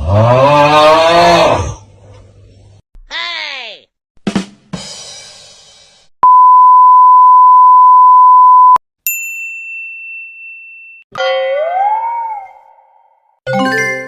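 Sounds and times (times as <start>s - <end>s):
censor beep: 6.2s - 8.8s.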